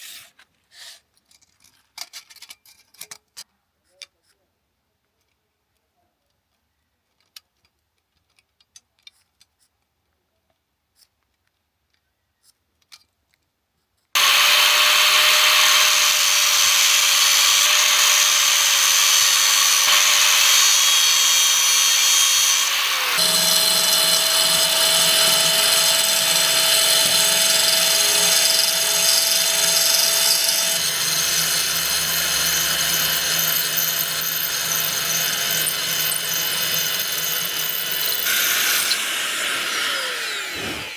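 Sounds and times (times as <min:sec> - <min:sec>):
power tool whining: 0:14.2 - 0:40.9.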